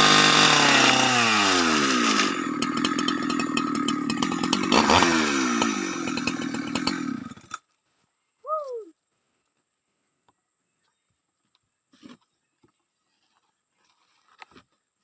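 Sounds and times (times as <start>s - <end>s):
chainsaw idling: 0.0s - 7.6s.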